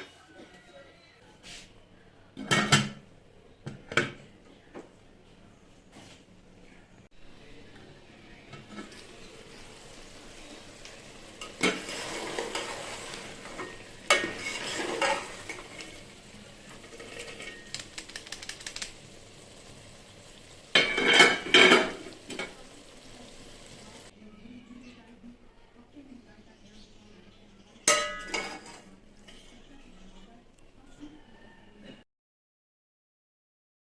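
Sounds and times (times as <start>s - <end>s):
low sizzle: 7.1s - 24.1s
utensil scraping a pan: 8.6s - 19.0s, 20.7s - 22.6s.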